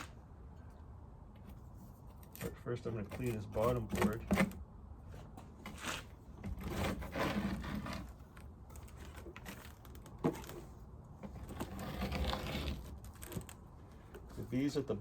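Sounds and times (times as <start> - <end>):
scraping on wooden board: 5.6 - 8.2, 11.2 - 13.4.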